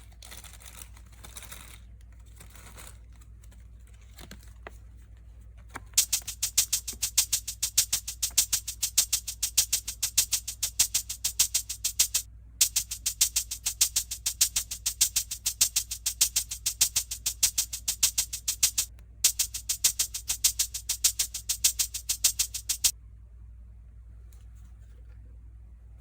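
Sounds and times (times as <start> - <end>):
fast high percussion beat: 6.0 - 22.9.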